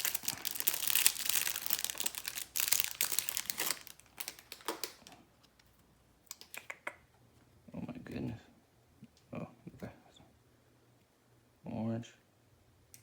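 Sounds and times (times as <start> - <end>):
packaging crinkling and tearing: 0.0 - 5.6.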